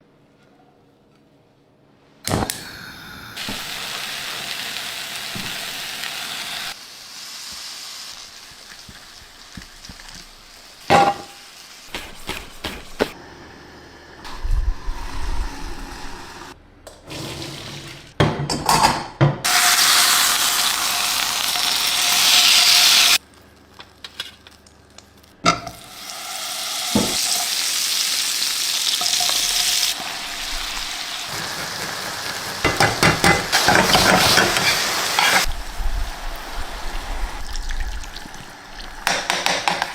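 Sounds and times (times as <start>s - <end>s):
food sizzling in a pan: 3.1s - 12.4s, 19.5s - 23.2s, 25.7s - 39.9s
utensils clinking against pan: 32.6s - 35.5s.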